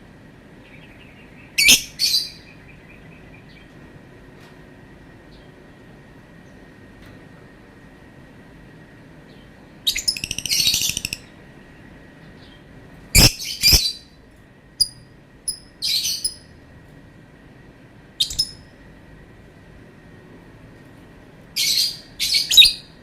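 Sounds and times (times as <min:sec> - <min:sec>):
lovebird calling: 0:01.0 - 0:03.0, 0:09.9 - 0:11.3, 0:13.2 - 0:14.0, 0:18.2 - 0:18.6.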